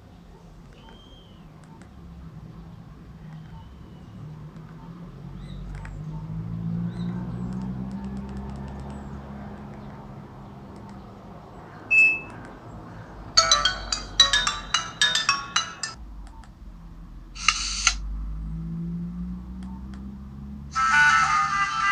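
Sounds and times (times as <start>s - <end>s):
phone ringtone melody: 11.9s - 12.3s, 13.4s - 16.0s
short high beep: 11.9s - 12.3s.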